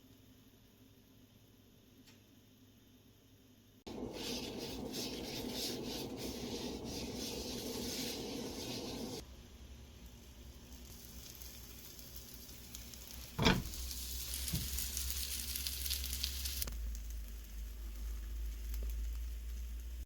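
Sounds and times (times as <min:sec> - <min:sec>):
food sizzling in a frying pan: 0:03.9 - 0:09.2, 0:09.8 - 0:20.0
sharp hit in pan: 0:13.4 - 0:13.8.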